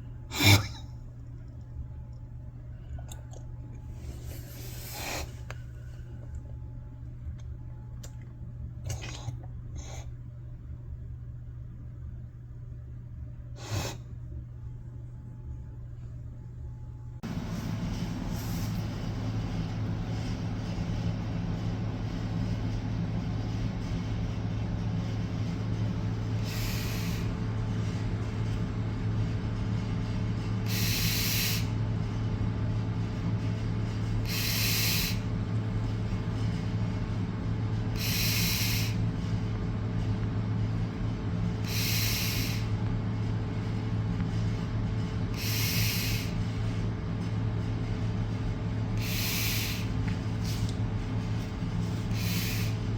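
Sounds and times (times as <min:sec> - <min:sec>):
steady low hum: 0:00.0 - 0:52.9
hissing breaths through nose: 0:13.6 - 0:14.1, 0:26.4 - 0:27.4, 0:30.7 - 0:31.8, 0:34.2 - 0:35.2, 0:37.9 - 0:39.0, 0:41.6 - 0:42.8, 0:45.4 - 0:46.4, 0:49.0 - 0:50.7, 0:51.9 - 0:52.9.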